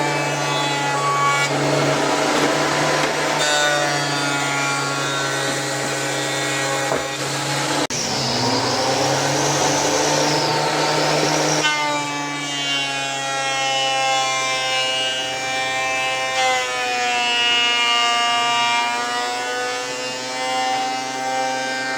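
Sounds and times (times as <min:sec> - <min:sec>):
thickness planer cutting: 0:00.0 - 0:21.9
high motor whine: 0:07.6 - 0:11.6.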